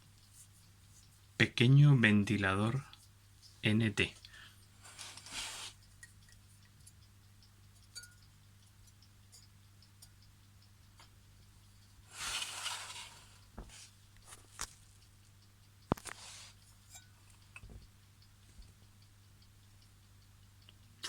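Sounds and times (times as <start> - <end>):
small electric fan humming: 0.0 - 21.0
rustle: 4.8 - 5.8, 12.1 - 13.9.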